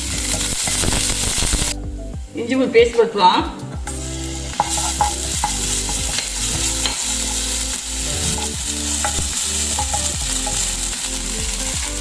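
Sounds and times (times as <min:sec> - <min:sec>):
paste sizzling in oil: 0:00.0 - 0:01.8, 0:03.9 - 0:12.0.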